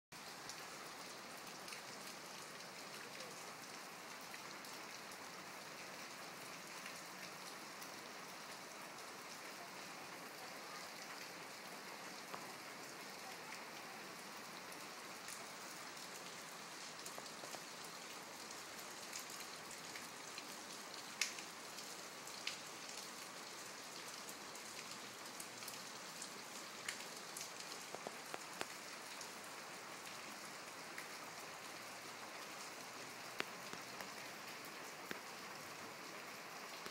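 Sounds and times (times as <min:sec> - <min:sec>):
rain falling: 0:00.1 - 0:36.9
raindrops tapping: 0:27.6 - 0:28.8.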